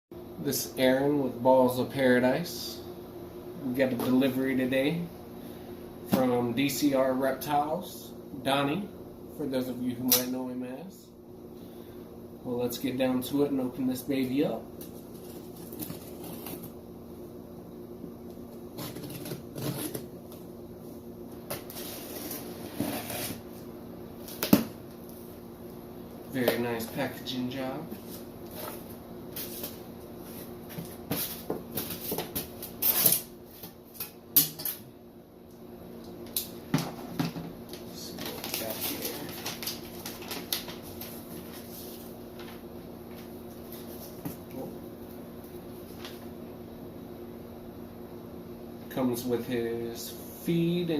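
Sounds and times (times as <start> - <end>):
steady low hum: 0.2 - 50.9
cardboard scratching and rustling: 18.7 - 20.1.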